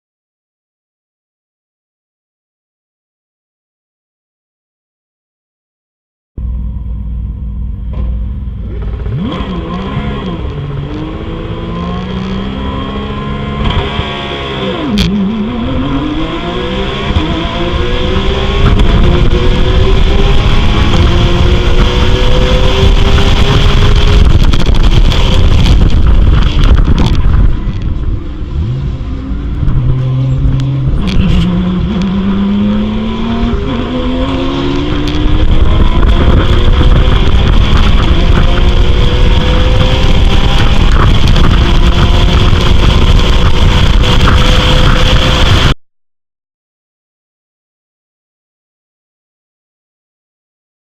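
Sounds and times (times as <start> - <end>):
race car engine revving: 7.9 - 45.8.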